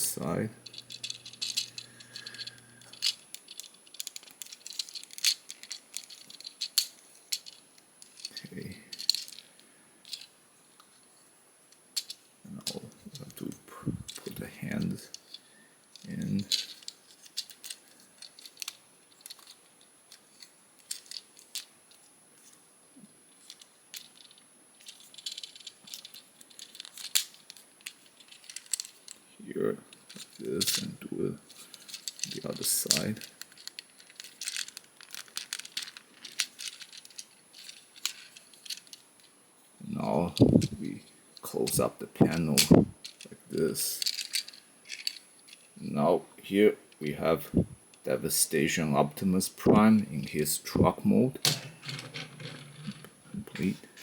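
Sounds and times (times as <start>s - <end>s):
plastic toy clicks and rattles: 0.6s - 10.3s, 12.0s - 12.2s, 15.1s - 22.0s, 23.4s - 29.2s, 29.9s - 30.9s, 31.5s - 39.3s, 42.6s - 45.7s, 51.4s - 53.7s.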